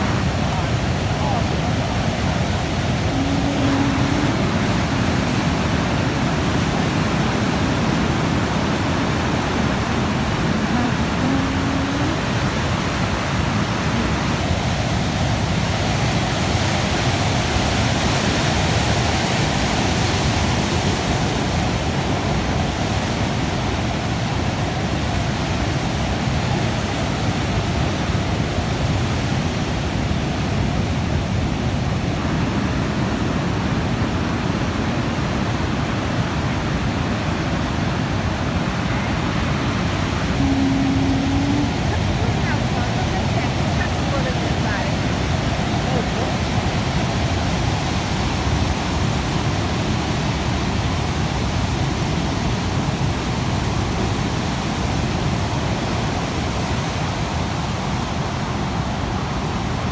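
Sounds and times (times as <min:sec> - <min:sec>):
heavy sea surf roaring: 0:00.0 - 0:59.9
low hum: 0:40.2 - 0:43.4.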